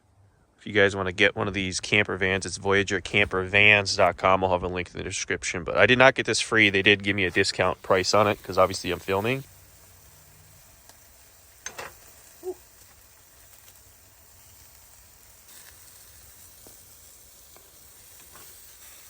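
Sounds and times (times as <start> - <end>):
food sizzling in a pan: 7.3 - 19.0.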